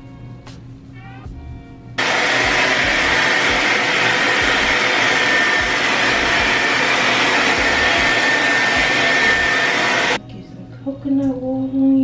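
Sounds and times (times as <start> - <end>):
hair dryer blowing: 2.0 - 10.2.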